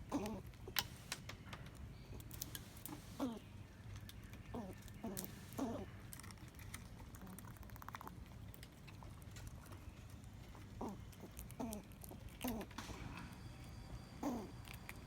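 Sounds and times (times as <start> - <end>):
squirrel clicking rattle: 4.0 - 9.8, 10.8 - 12.9.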